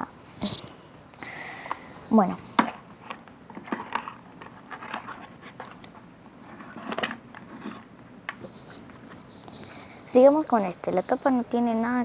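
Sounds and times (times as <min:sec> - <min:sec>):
light clicks and scratches: 0:03.0 - 0:12.0.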